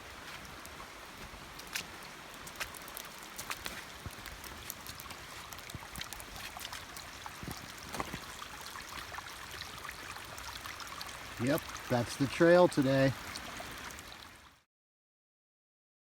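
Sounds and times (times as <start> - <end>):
running water: 0.0 - 14.6
raindrops ticking: 0.1 - 14.2.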